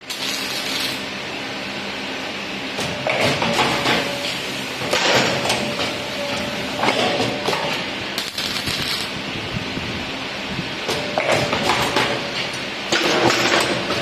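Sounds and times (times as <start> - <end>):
faint machine whine: 0.1 - 11.2.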